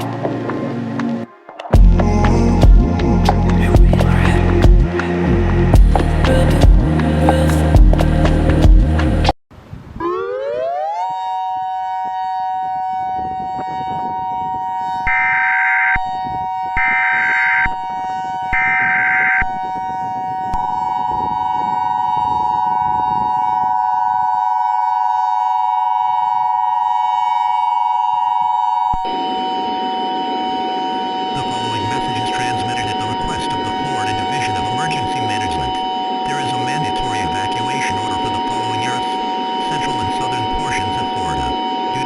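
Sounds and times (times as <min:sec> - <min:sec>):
higher tone siren bursts: 0:10.0 - 0:42.0
warning siren steady two-note: 0:10.0 - 0:42.0.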